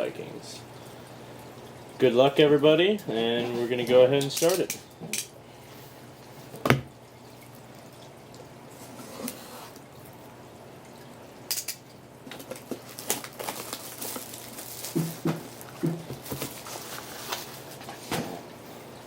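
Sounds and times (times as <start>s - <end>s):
low steady hum: 0.0s - 19.0s
taps and rustles: 12.2s - 18.4s.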